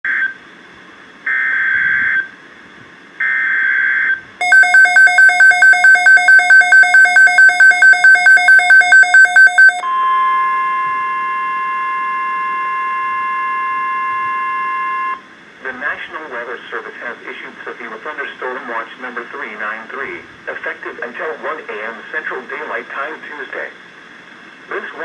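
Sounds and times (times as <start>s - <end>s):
pulsing alert beep: 4.4s - 9.8s
short data bursts: 4.4s - 9.8s
steady attention tone: 4.4s - 10.0s.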